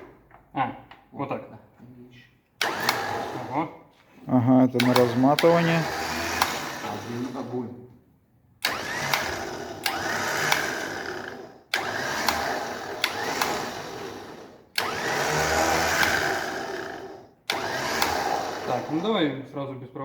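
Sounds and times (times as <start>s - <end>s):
electric winch motor whining: 2.6s - 3.6s, 4.8s - 7.7s, 8.6s - 19.4s
sharp clicks: 4.8s - 6.6s, 8.6s - 10.9s, 11.7s - 13.8s, 14.7s - 15.1s.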